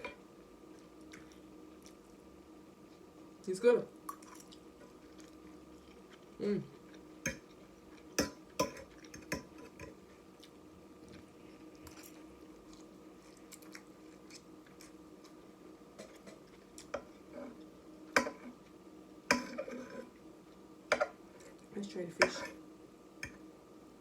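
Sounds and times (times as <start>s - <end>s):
quiet chewing: 0.7s - 2.2s, 4.1s - 20.6s.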